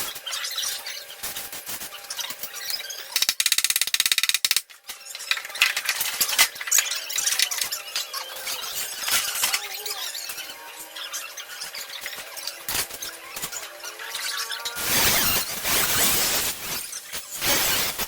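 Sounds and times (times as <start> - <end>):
welding arc crackling: 14.8 - 18.0.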